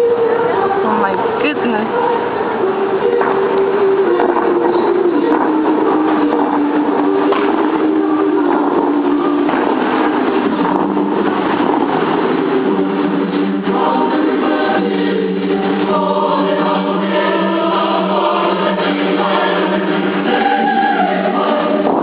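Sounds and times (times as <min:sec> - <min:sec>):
choir singing sustained chords: 0:00.0 - 0:22.0.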